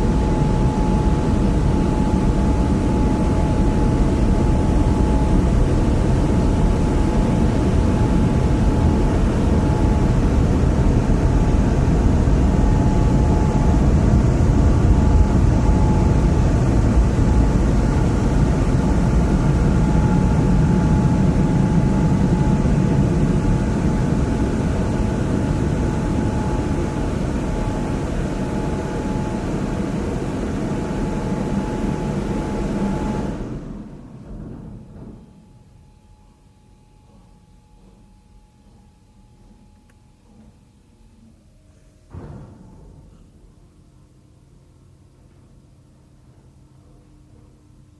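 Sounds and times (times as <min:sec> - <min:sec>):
car wash rumble and rush: 0:00.0 - 0:27.8
faint steady whine: 0:00.0 - 0:47.9.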